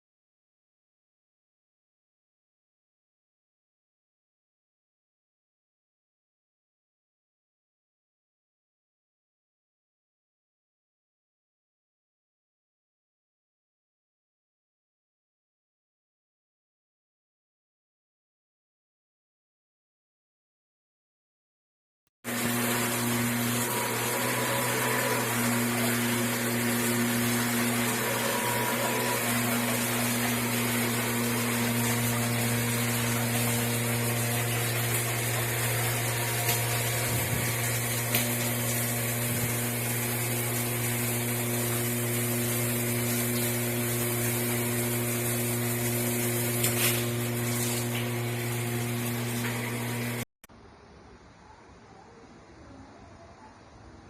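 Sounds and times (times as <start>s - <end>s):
booster pump humming: 22.2s - 50.3s
shower spraying water: 22.3s - 50.3s.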